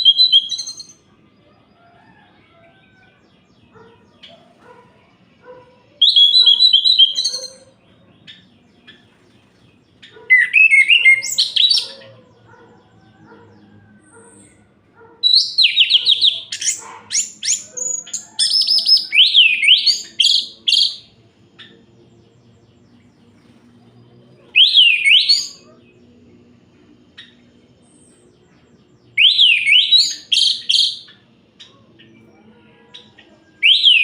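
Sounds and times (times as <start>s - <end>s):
thrush singing whistled phrases: 6.0s - 7.6s, 10.4s - 11.9s, 24.6s - 25.6s, 29.2s - 31.1s, 33.6s - 34.0s.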